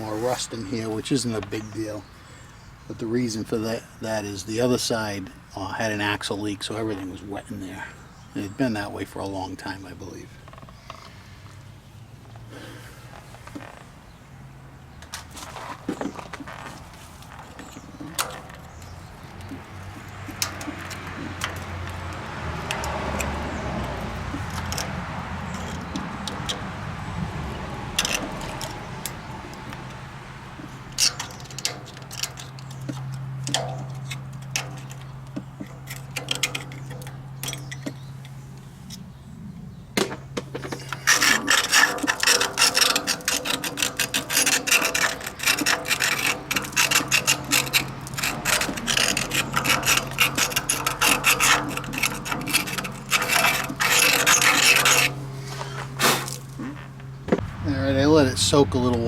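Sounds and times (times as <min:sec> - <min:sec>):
rasping and scrubbing on metal: 0:00.0 - 0:02.0, 0:15.3 - 0:39.0, 0:40.6 - 0:57.1.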